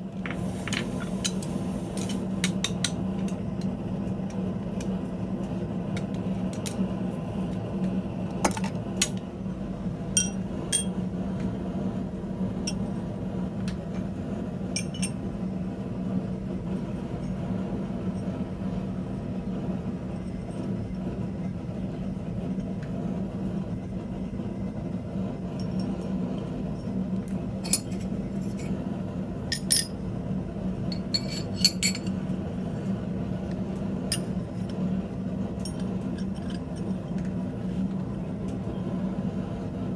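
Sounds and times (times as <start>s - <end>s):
metallic clinks and taps: 10.2s - 11.0s, 29.5s - 30.0s, 30.9s - 32.2s, 35.6s - 37.0s.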